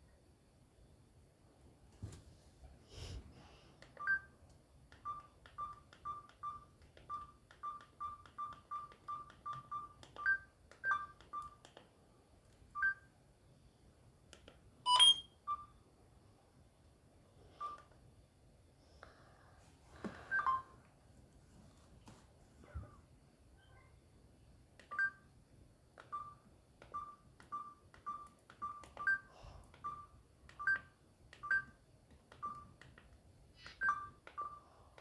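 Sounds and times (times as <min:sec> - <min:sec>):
phone keypad beeps: 0:04.0 - 0:04.3, 0:04.9 - 0:11.6, 0:14.9 - 0:15.7, 0:17.6 - 0:17.9, 0:20.3 - 0:20.7, 0:24.8 - 0:25.2, 0:26.0 - 0:32.8, 0:33.6 - 0:34.7.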